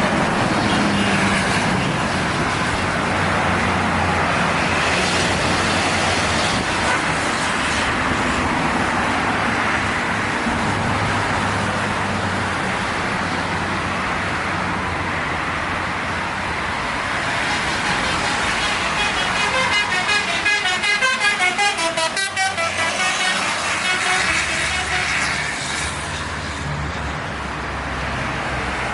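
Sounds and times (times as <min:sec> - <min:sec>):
road traffic noise: 0:00.0 - 0:28.9
bus horn warbling tune: 0:06.8 - 0:07.2, 0:18.6 - 0:25.6.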